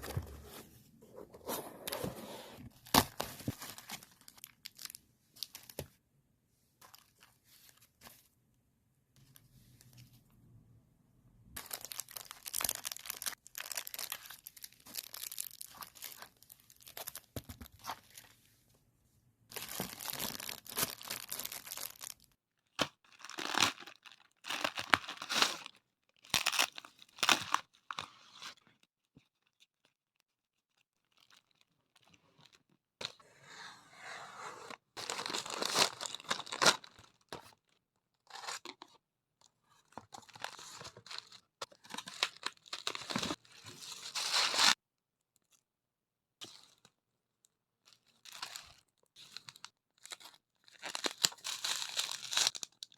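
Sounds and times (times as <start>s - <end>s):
packaging torn and crinkled: 11.6s - 17.3s, 19.5s - 28.6s, 35.0s - 37.3s, 40.2s - 43.4s, 48.3s - 52.9s.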